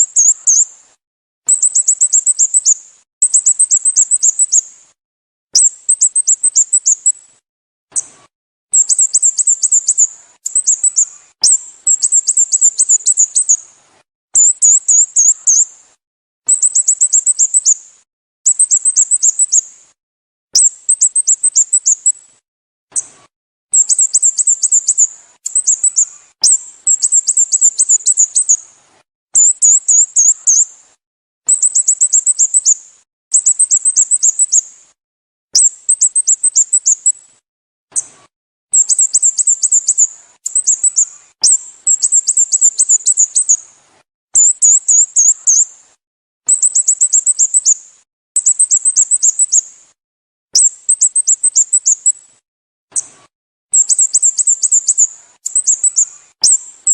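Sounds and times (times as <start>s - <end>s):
bird chirping: 0.0s - 0.8s, 1.5s - 4.7s, 5.6s - 7.2s, 8.7s - 13.7s, 14.4s - 15.8s, 16.5s - 17.8s, 18.5s - 19.7s, 20.6s - 22.2s, 23.7s - 28.7s, 29.4s - 30.7s, 31.5s - 34.7s, 35.6s - 37.2s, 38.7s - 43.7s, 44.4s - 45.7s, 46.5s - 47.8s, 48.4s - 49.8s, 50.6s - 52.2s, 53.7s - 56.9s.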